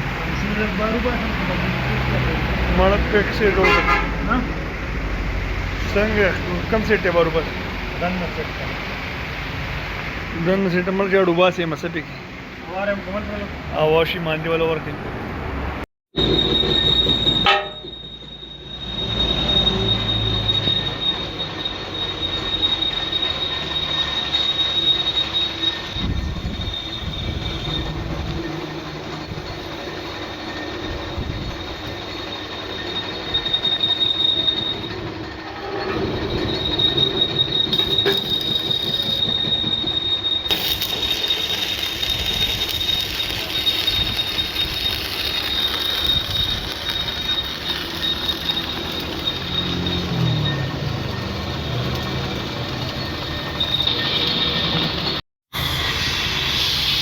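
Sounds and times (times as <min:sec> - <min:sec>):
high-pitched metalwork whine: 0:16.2 - 0:57.0.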